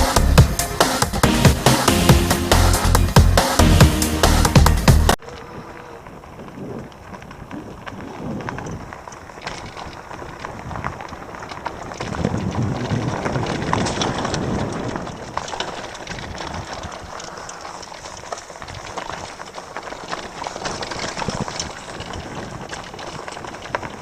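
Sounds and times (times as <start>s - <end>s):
tyres crunching on gravel: 0.0s - 24.0s
bike clicks and rattles: 5.2s - 24.0s.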